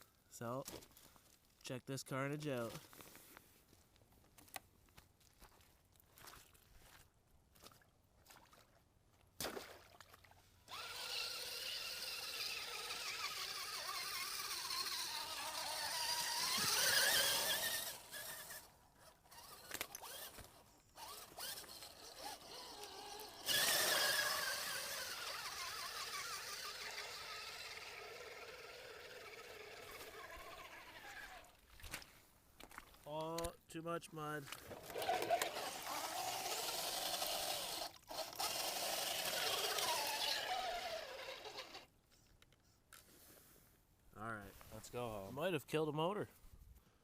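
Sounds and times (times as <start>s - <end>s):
rc truck motor whining: 10.7s - 31.6s, 34.8s - 41.9s.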